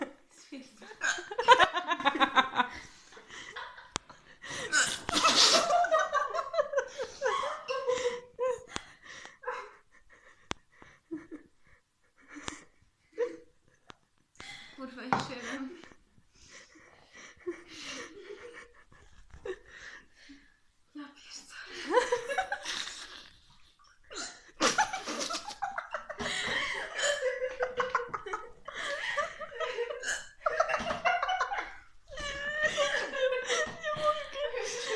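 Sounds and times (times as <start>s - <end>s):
woman laughing breathily: 1.0s - 13.5s, 15.6s - 20.5s, 21.6s - 34.9s
woman laughing: 24.2s - 34.9s.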